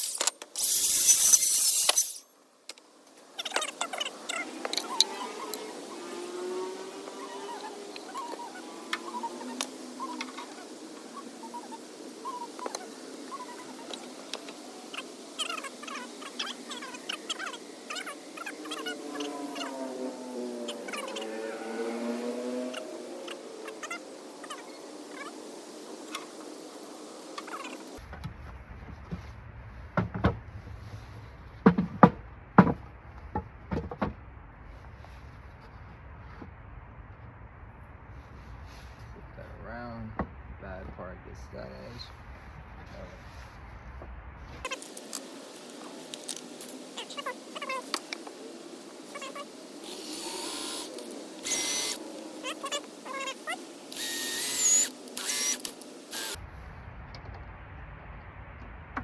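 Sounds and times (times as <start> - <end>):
hissing noise: 0.0 - 2.3.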